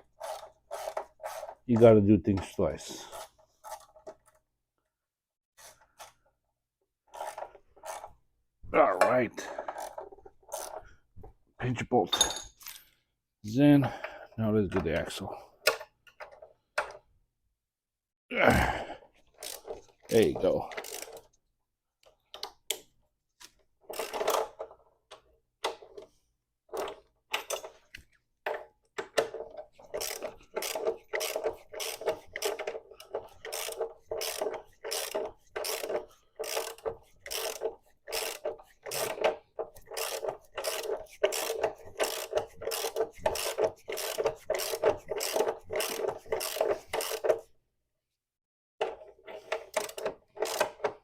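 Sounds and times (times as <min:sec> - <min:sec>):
socket ratchet clicking: 0:29.9 - 0:47.4, 0:49.7 - 0:51.0.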